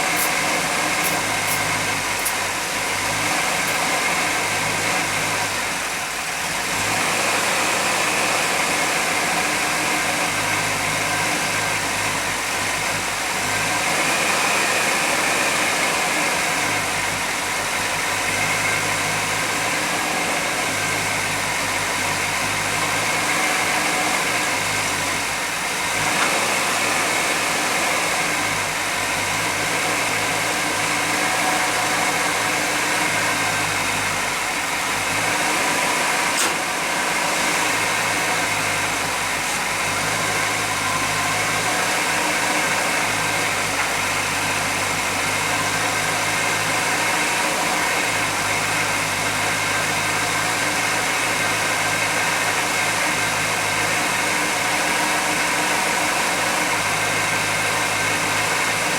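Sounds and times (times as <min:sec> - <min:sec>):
constant hiss: 0:00.0 - 0:04.7
engine idling: 0:00.0 - 0:58.9.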